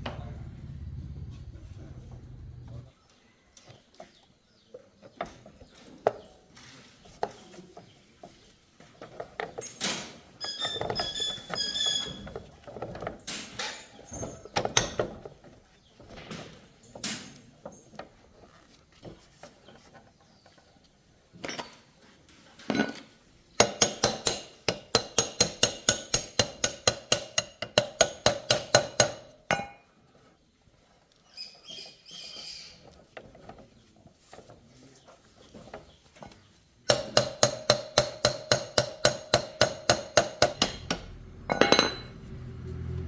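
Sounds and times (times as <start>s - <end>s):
metal tools clinking: 41.5s - 42.2s
metallic ringing: 41.5s - 42.3s.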